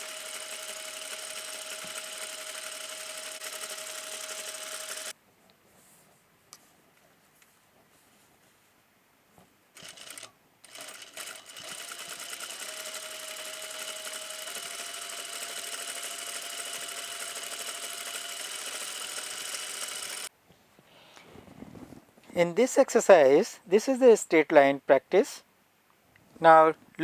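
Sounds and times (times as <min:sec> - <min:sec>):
sewing machine stitching: 0:00.0 - 0:05.1, 0:09.8 - 0:20.3.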